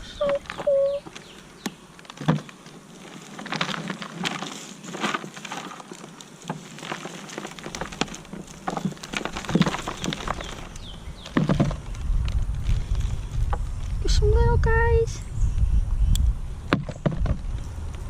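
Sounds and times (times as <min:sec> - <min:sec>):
hands digging in soil: 0:00.2 - 0:14.1.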